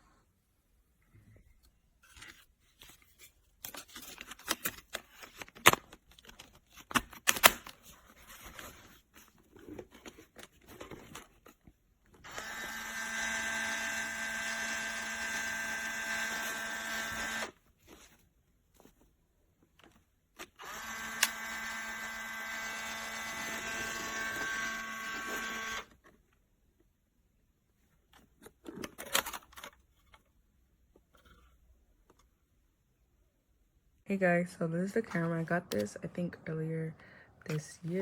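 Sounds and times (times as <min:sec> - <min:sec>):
camera film ejection motor whirring: 0:12.3 - 0:17.5, 0:20.6 - 0:25.9.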